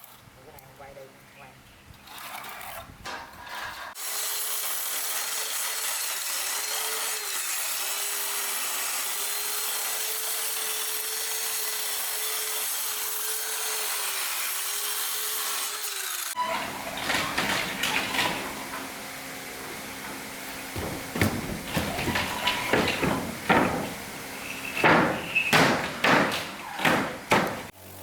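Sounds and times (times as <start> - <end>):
handling noise: 16.4 - 27.7.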